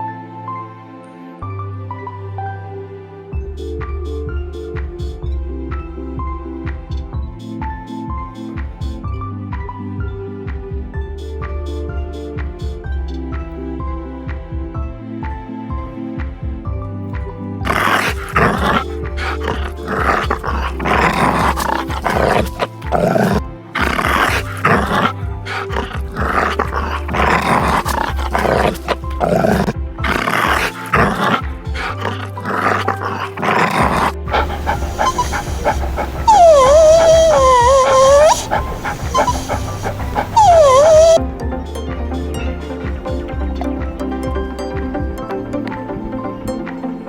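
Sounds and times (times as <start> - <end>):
background music: 0.0 - 47.0
animal calls: 17.7 - 41.2.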